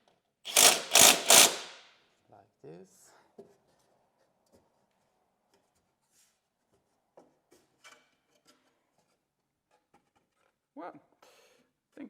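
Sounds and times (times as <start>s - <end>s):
faint clicks and scrapes of screws: 0.5s - 1.8s.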